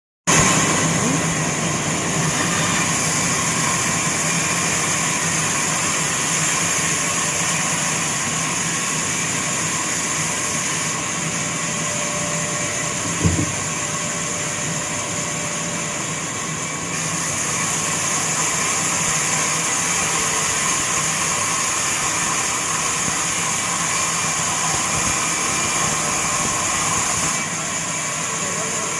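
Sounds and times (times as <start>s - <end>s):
saw machine whirring: 0.3s - 28.9s
short knock: 13.0s - 13.7s.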